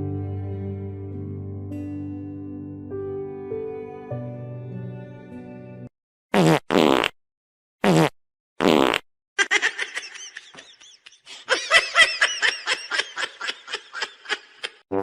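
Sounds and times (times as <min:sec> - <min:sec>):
buzzy fart-like blasts: 0:06.3 - 0:07.2, 0:07.8 - 0:09.0
people laughing: 0:09.4 - 0:14.8.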